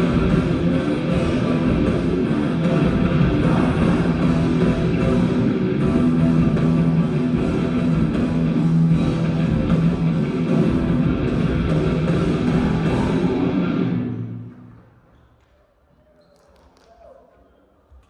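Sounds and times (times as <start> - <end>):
rock band playing: 0.0 - 14.4.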